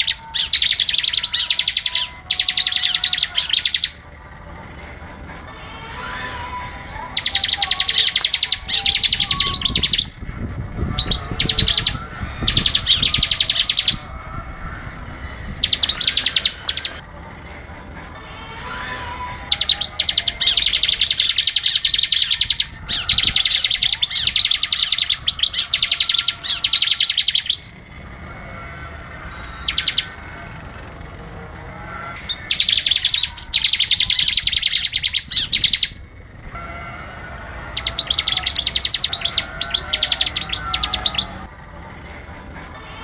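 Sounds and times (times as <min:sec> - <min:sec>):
bird trilling song: 0:00.0 - 0:04.1, 0:06.1 - 0:14.3, 0:15.4 - 0:17.0, 0:18.8 - 0:28.0, 0:29.2 - 0:31.0, 0:32.1 - 0:41.5.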